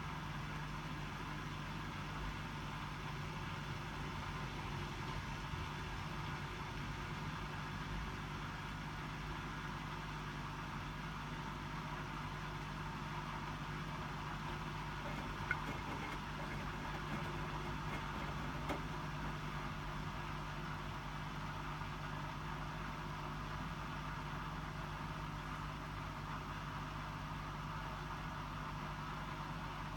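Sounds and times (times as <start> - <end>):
washing machine humming: 12.4 - 21.9.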